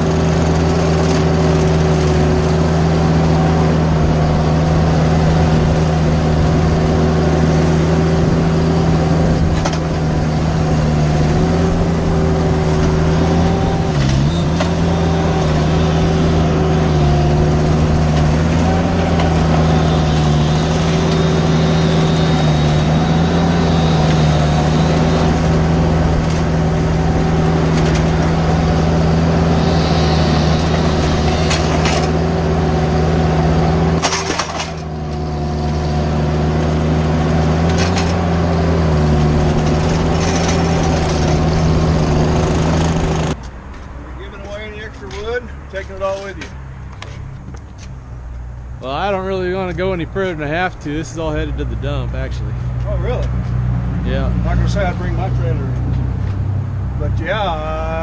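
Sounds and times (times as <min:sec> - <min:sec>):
small engine running at high revs: 0:00.0 - 0:43.4.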